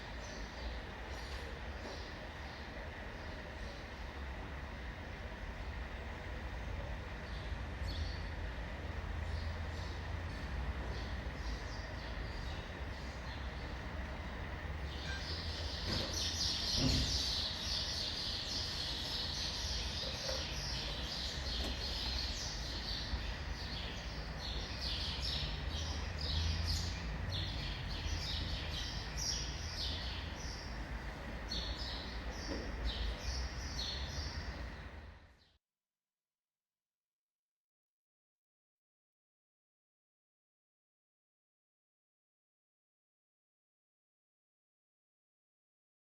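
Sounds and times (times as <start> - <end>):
low rumble of city traffic: 0.0 - 35.6
small birds chirping: 9.2 - 14.2, 14.8 - 35.0.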